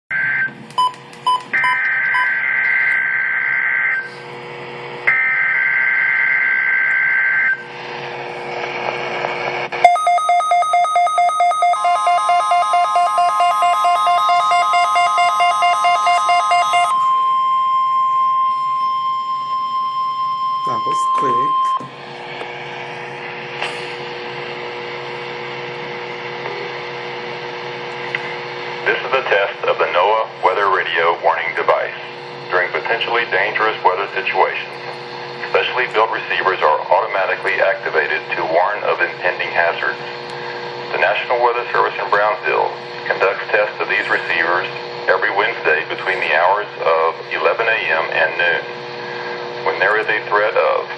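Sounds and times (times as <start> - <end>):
radio static: 1.8 - 9.8, 20.7 - 27.8, 28.8 - 48.8, 49.4 - 50.9
short beeps: 9.8 - 21.9
two-pitch data tones: 9.8 - 21.9
rapid pulsing alert beep: 9.9 - 17.0.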